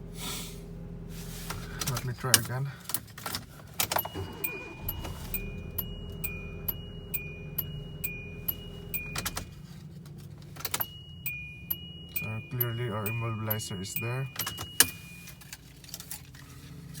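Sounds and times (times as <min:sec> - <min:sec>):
key in ignition: 0:01.8 - 0:16.4
car warning chime: 0:03.8 - 0:16.0.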